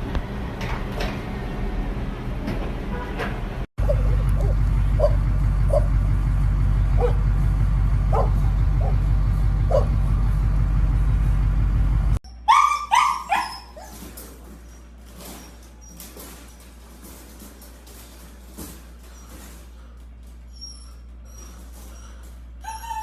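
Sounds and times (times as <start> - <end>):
steady low rumble: 3.5 - 12.2
dog whimpering yelps: 3.8 - 5.8, 12.3 - 16.0, 20.5 - 23.0
dog barking: 3.8 - 5.9, 7.0 - 7.2, 8.1 - 9.1, 9.7 - 10.0, 12.4 - 14.0.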